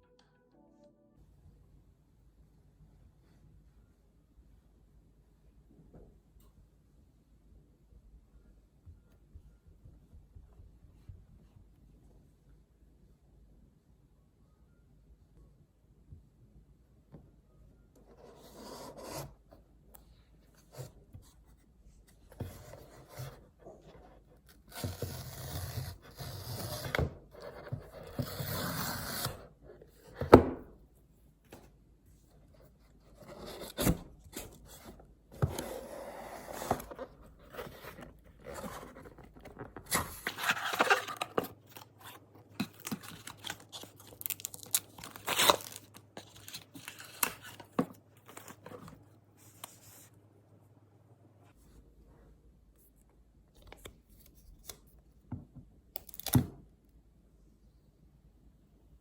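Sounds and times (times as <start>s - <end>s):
packaging scraping and rubbing: 33.2s - 48.8s
packaging tearing: 42.6s - 47.6s.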